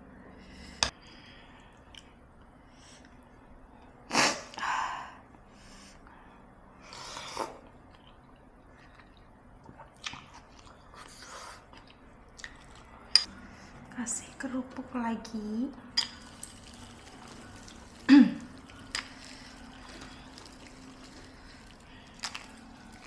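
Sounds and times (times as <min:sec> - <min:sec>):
person chewing: 0:16.0 - 0:23.0.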